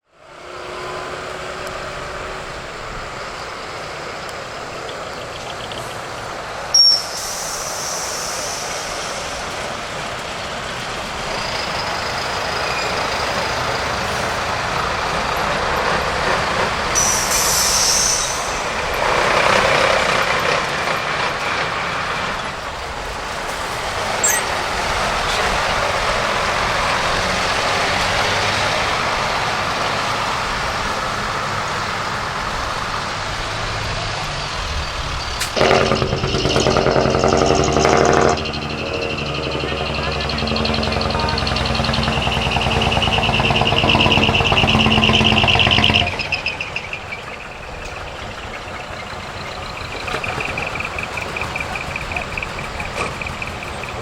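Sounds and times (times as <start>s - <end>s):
truck engine running: 1.1s - 54.0s
air brakes hissing: 5.8s - 10.4s, 16.7s - 20.2s.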